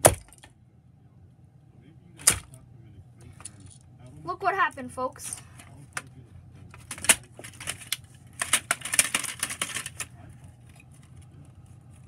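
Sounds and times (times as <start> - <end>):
broken plastic pieces rattling: 6.8 - 10.1.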